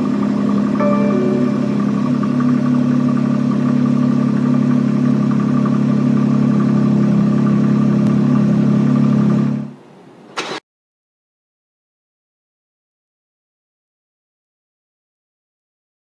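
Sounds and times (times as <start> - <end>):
car engine idling: 0.0 - 10.0.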